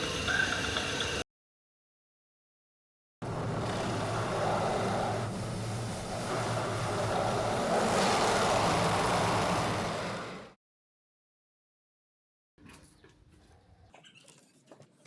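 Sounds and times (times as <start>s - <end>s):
car engine hum: 3.2s - 10.5s
road noise: 3.2s - 10.6s.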